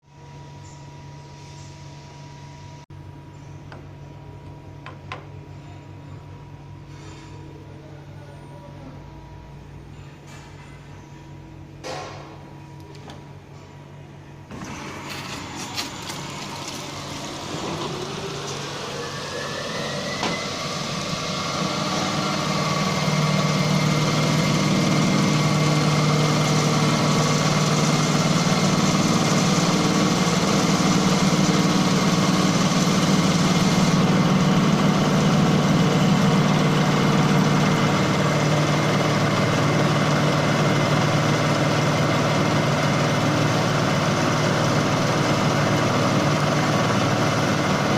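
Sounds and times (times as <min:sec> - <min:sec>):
machine motor whine: 0:14.5 - 0:47.9.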